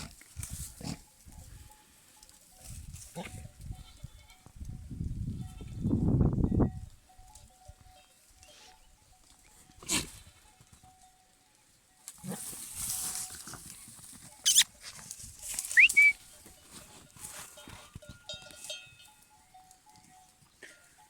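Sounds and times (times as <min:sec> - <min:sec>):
sharp rising squeak: 0:14.4 - 0:14.7, 0:15.8 - 0:16.2
goats calling: 0:14.4 - 0:14.8, 0:15.7 - 0:16.2.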